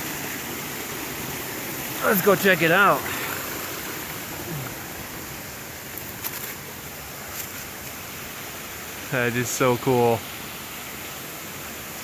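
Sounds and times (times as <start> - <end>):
waterfall rushing: 0.0 - 12.0.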